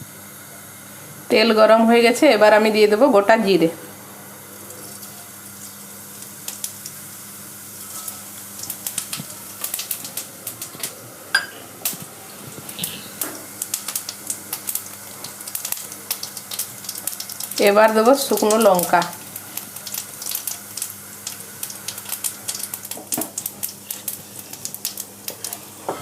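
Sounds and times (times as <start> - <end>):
seeds popping in hot oil: 4.7 - 10.8, 11.8 - 25.7.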